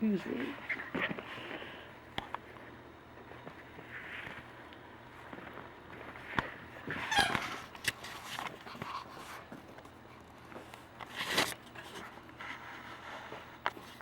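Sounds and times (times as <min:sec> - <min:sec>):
puppy sliding cry: 0:06.9 - 0:07.6.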